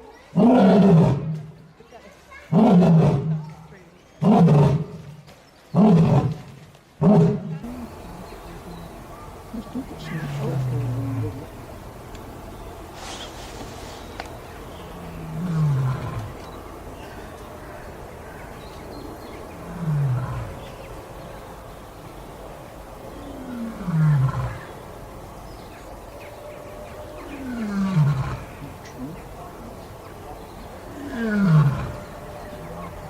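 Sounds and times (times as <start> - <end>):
lion roaring: 0.3 - 1.6, 2.5 - 3.6, 4.2 - 7.9, 9.9 - 11.6, 14.9 - 16.6, 19.4 - 20.9, 23.1 - 24.9, 27.3 - 29.4, 30.8 - 33.0.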